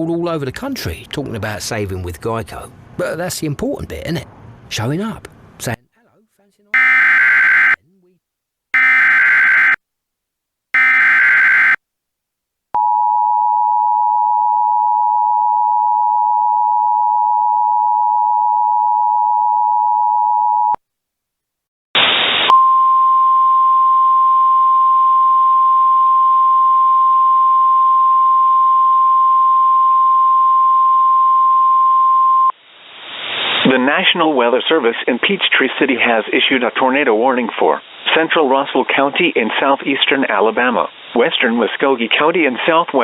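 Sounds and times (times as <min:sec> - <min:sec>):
steady warning tone: 0:06.7 - 0:07.8, 0:08.8 - 0:09.8, 0:10.8 - 0:11.8
buzzing data tones: 0:06.8 - 0:07.8, 0:10.8 - 0:11.8
two-tone attention signal: 0:06.8 - 0:07.8, 0:08.8 - 0:09.8, 0:10.8 - 0:11.8
static: 0:22.0 - 0:22.5, 0:32.6 - 0:34.2
burst of hiss: 0:32.8 - 0:33.7.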